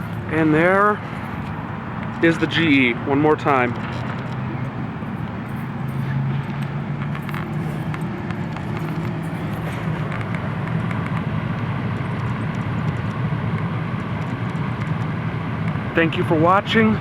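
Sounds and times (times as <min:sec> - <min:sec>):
air conditioner unit humming: 0:00.0 - 0:17.0
fan rushing: 0:00.0 - 0:17.0.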